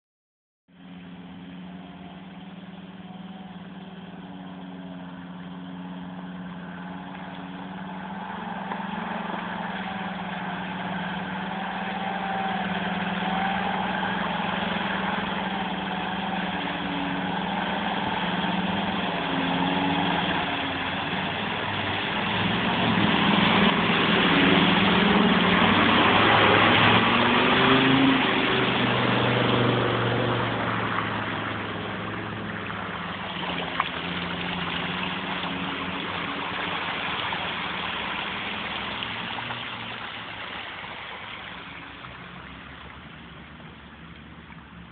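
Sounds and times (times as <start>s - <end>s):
off-road vehicle engine running: 0.7s - 44.9s.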